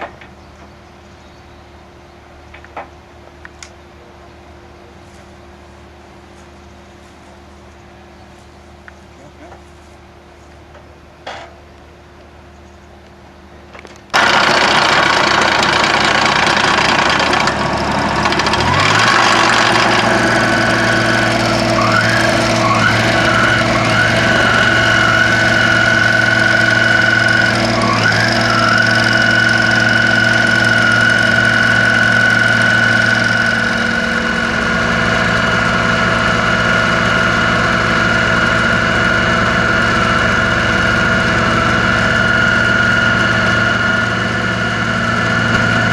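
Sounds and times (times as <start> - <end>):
engine starting and running: 13.8 - 45.9
high whine: 13.9 - 45.9.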